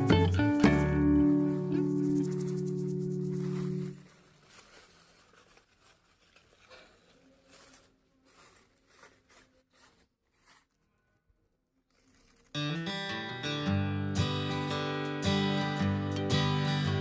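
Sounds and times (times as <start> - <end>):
faint rustles: 1.3 - 12.6.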